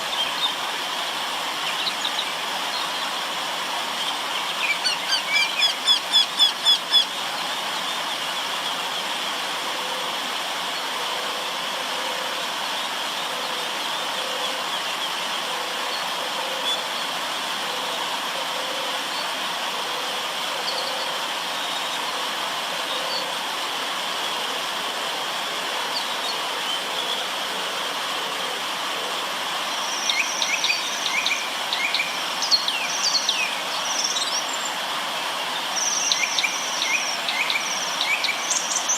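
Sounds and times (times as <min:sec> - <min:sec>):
river water running: 0:00.0 - 0:38.9
birds singing: 0:04.1 - 0:07.0, 0:35.7 - 0:38.9.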